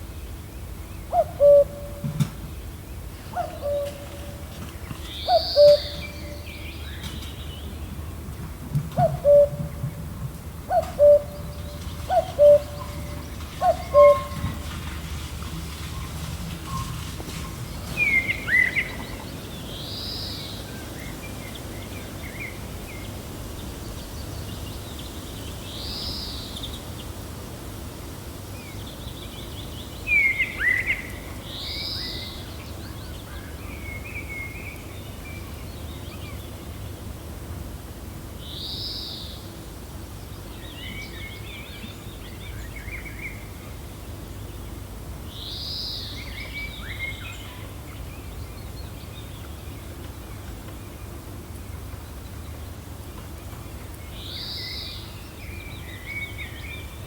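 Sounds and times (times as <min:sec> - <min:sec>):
low wind rumble: 0:00.0 - 0:57.0
birds chirping: 0:02.4 - 0:08.1, 0:09.0 - 0:27.2.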